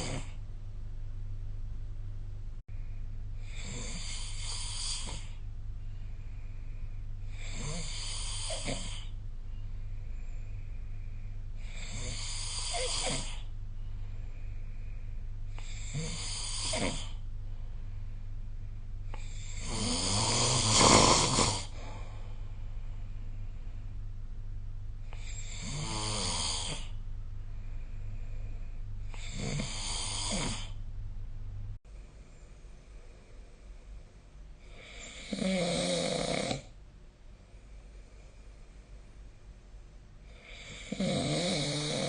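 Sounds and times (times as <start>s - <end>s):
person snoring: 0.0s - 0.4s, 3.4s - 5.4s, 7.3s - 9.2s, 11.6s - 13.5s, 15.5s - 17.2s, 19.1s - 22.3s, 25.1s - 27.0s, 29.1s - 30.8s, 34.7s - 36.7s, 40.3s - 42.0s.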